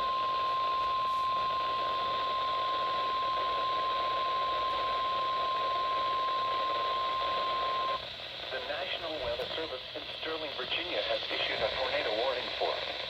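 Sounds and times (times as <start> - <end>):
steady high alarm tone: 0.0 - 8.0
radio static hiss: 0.0 - 13.0.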